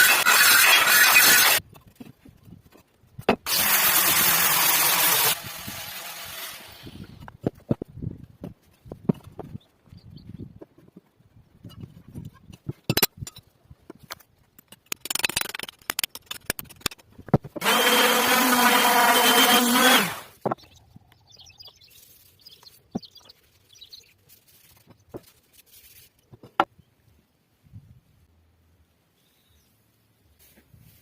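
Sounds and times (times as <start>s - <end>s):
power tool motor spinning down: 3.5s - 7.0s, 17.6s - 20.3s.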